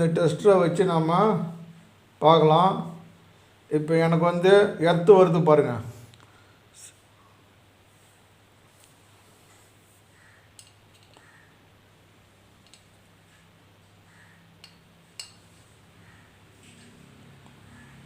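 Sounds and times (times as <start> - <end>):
light sharp clicks and taps: 12.6 - 12.9.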